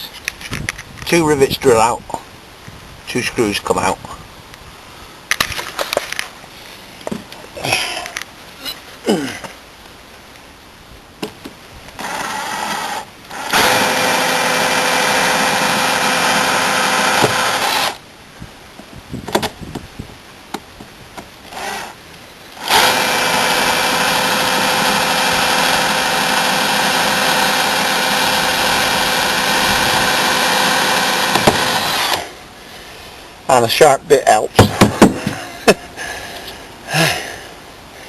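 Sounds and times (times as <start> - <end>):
power drill whining: 12.0 - 18.0, 21.5 - 22.0, 22.6 - 32.4.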